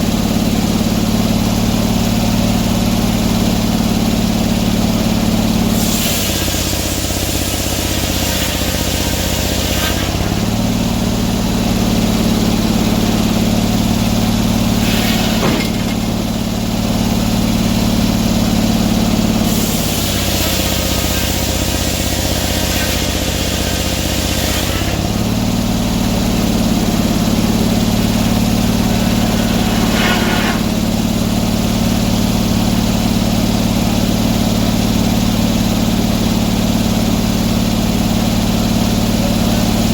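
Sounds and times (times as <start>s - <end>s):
sawmill engine running: 0.0s - 39.9s
loud hiss: 5.7s - 17.1s, 19.4s - 25.0s, 26.1s - 31.7s.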